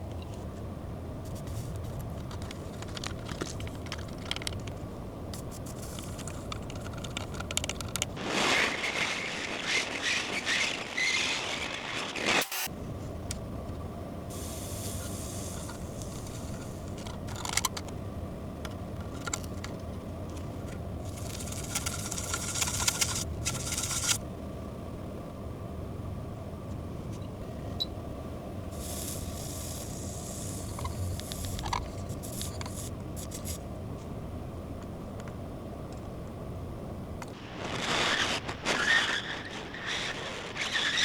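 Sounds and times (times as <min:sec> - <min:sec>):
steady low hum: 0:00.0 - 0:38.6
scraping hiss: 0:05.3 - 0:12.7, 0:14.3 - 0:17.5, 0:21.0 - 0:24.2, 0:28.8 - 0:33.6.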